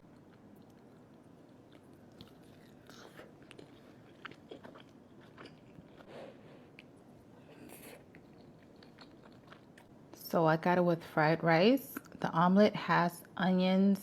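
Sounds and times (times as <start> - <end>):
chewing and mouth sounds: 0.0 - 10.0.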